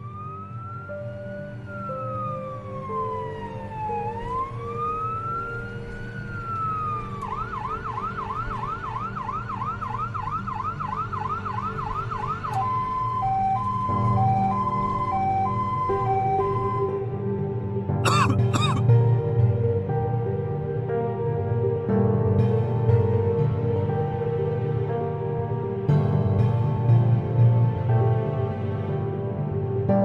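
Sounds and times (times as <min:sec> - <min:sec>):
two-tone siren: 0:00.0 - 0:16.9
siren wailing: 0:11.3 - 0:16.9
siren yelping: 0:18.1 - 0:18.8.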